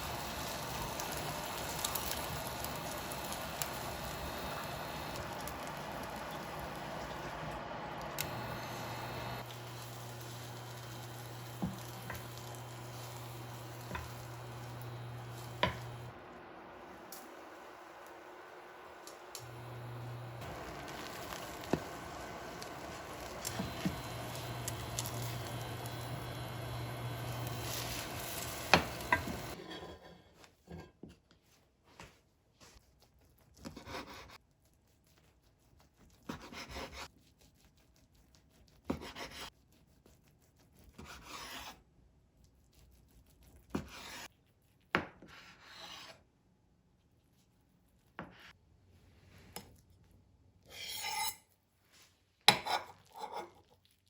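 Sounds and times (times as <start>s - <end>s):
steady hum: 0.0s - 29.6s.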